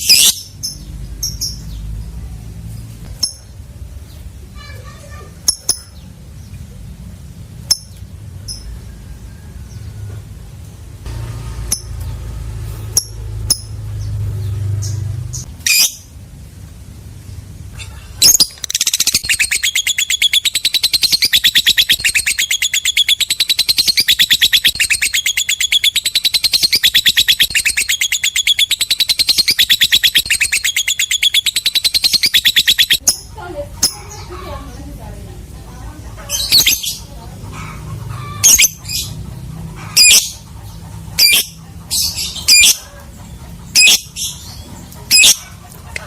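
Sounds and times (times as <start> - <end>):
lovebird chattering trill: 4.6 - 6.2, 14.8 - 16.1, 17.8 - 34.8, 36.2 - 46.0.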